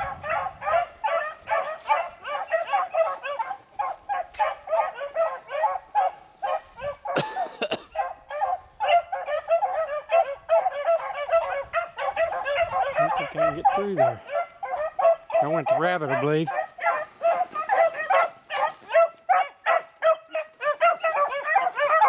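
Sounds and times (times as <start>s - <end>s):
beagles baying: 0.0s - 22.0s.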